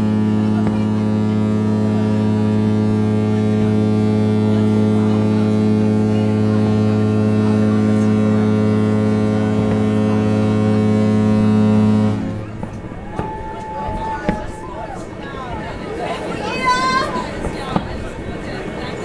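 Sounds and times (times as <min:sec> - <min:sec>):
distant fireworks popping: 0:00.0 - 0:02.3, 0:07.4 - 0:19.0
ship's horn long deep blast: 0:00.0 - 0:17.9.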